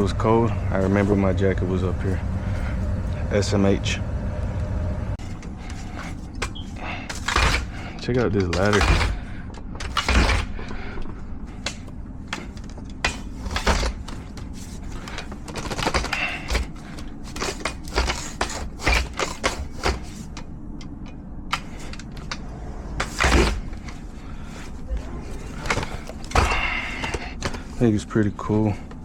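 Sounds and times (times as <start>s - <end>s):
faint low hum: 0.0s - 29.0s.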